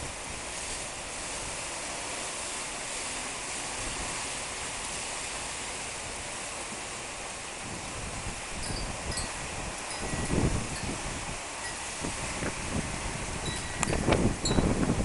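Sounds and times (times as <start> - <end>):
wind and rain rushing: 0.0 - 15.0
wind buffeting microphone: 7.6 - 15.0.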